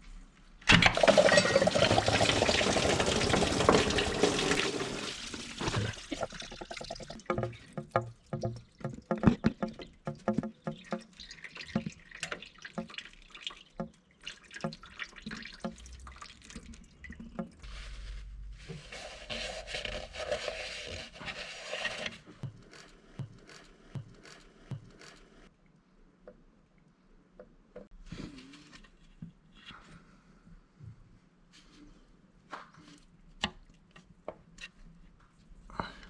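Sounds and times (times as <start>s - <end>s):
liquid dripping and trickling: 1.0s - 17.6s.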